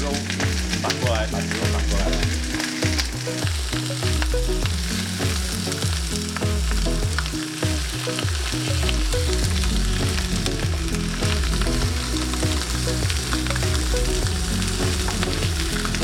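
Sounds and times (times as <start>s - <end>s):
background music: 0.0s - 16.0s
chicken sizzling in hot oil: 0.0s - 16.0s.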